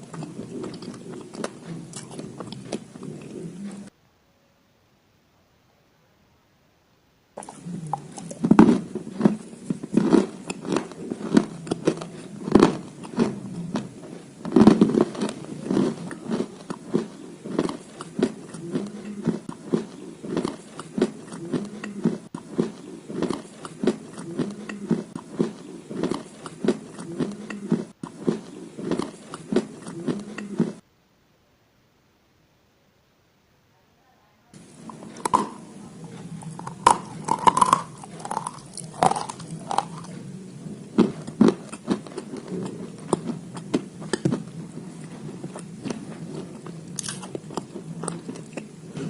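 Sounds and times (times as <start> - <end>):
person chewing crunchy clay: 0.0 - 3.9, 7.4 - 30.8, 34.6 - 49.0.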